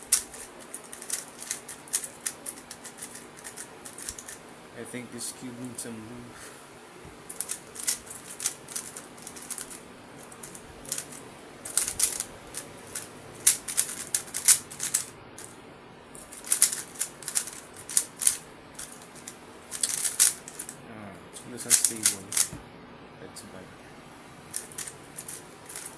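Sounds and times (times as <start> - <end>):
plastic puzzle cube clicking: 0.1 - 4.4, 10.4 - 15.5, 16.4 - 19.0, 19.7 - 20.7, 21.7 - 22.6.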